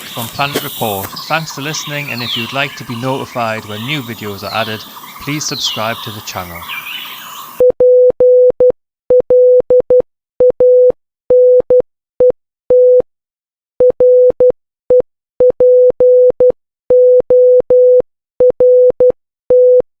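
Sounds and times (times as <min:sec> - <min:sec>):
morse code beeps: 0:00.0 - 0:06.5.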